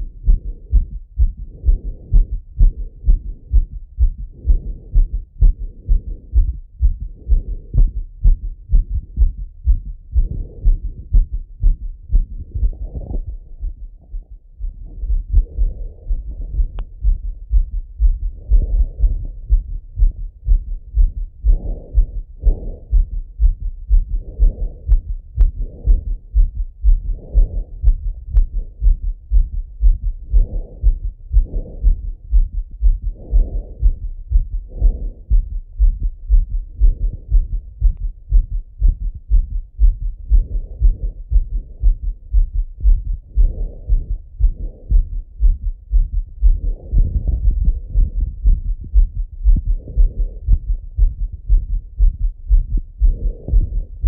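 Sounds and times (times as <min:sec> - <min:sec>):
fast heartbeat through stethoscope: 0:00.0 - 0:54.0.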